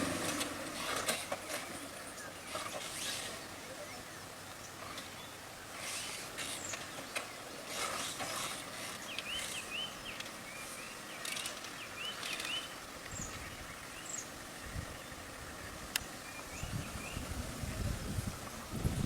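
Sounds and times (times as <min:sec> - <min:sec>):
hissing bursts: 0:05.7 - 0:06.8
bird chirping: 0:08.7 - 0:18.2.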